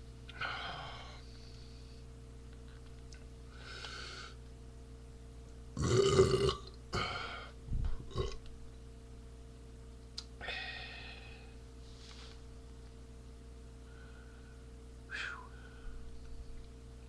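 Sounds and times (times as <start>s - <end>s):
man belching: 5.8s - 7.3s, 8.1s - 8.4s.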